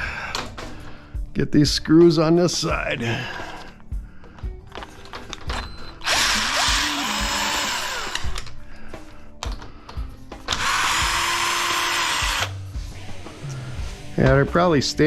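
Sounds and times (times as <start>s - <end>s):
power drill backing out screws: 4.7s - 8.5s, 10.4s - 12.5s.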